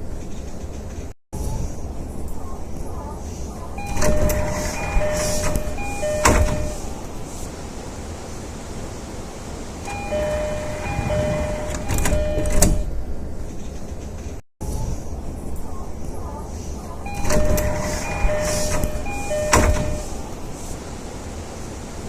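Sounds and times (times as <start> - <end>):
train humming: 3.7 - 13.4, 17.0 - 22.0
two-note door chime: 3.8 - 7.0, 9.9 - 12.9, 17.1 - 20.3
sliding doors shutting: 3.8 - 14.4, 17.0 - 22.0.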